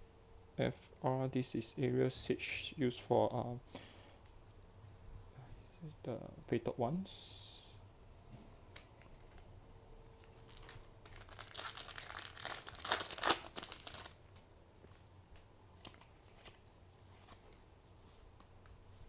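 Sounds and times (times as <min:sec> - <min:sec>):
packaging wrapper crumpling and tearing: 0:10.3 - 0:14.2.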